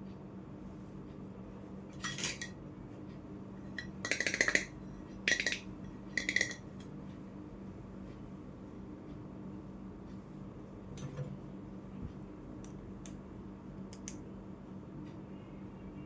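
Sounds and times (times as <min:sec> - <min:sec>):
toy cookware clinking: 0:06.2 - 0:06.6.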